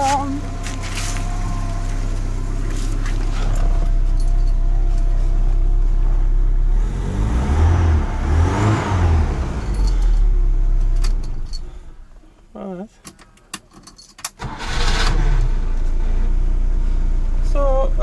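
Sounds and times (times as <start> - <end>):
car engine running: 0.0 - 12.4.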